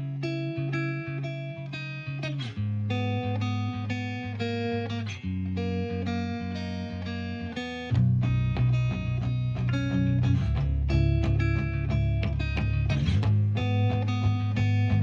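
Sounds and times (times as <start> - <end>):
plucked guitar music: 0.0 - 15.0
bass line: 7.9 - 15.0.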